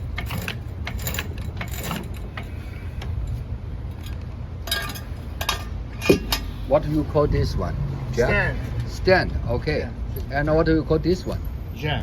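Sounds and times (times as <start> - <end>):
metallic tool clicks and clanks: 0.0 - 3.2.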